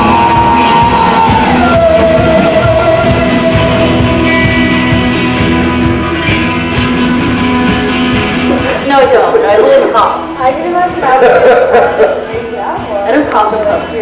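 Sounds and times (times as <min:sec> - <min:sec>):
electric guitar sustained notes: 0:00.0 - 0:10.9
rock music: 0:00.0 - 0:14.0
steady beat: 0:00.0 - 0:14.0.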